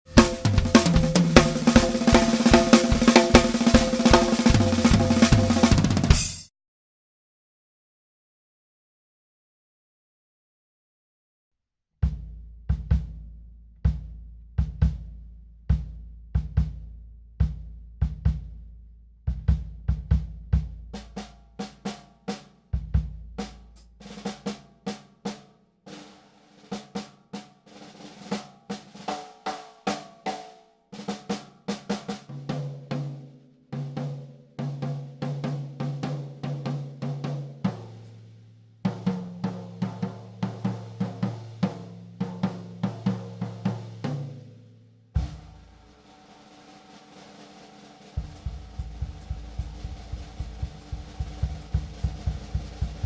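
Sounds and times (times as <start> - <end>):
snare and tom strokes: 0.1 - 6.5, 45.2 - 53.0
bass drum hits: 0.2 - 6.5, 48.2 - 53.0.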